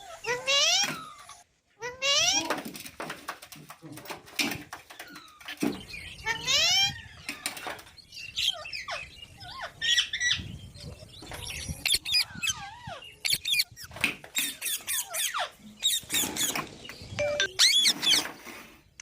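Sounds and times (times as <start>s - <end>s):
parrots squawking and chirping: 0.0s - 2.6s, 4.8s - 18.8s
parrot screeches: 17.6s - 18.3s.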